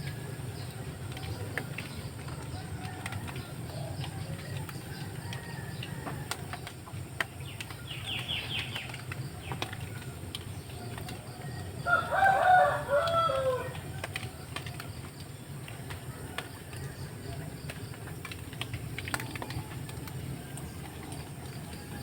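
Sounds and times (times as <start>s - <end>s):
small birds chirping: 0.0s - 22.0s
rooster crowing: 2.5s - 6.6s, 11.8s - 14.1s.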